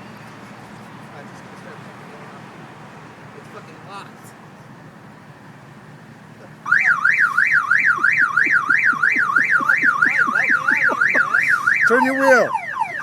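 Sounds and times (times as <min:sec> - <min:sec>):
car alarm siren warbling: 0:06.7 - 0:13.0.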